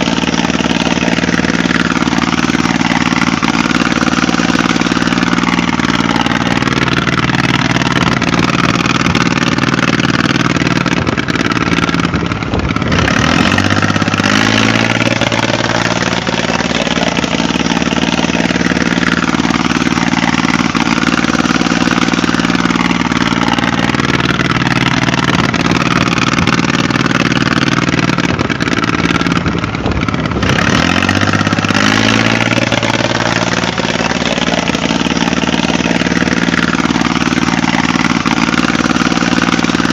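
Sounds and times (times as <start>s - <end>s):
engine droning: 0.0s - 39.9s.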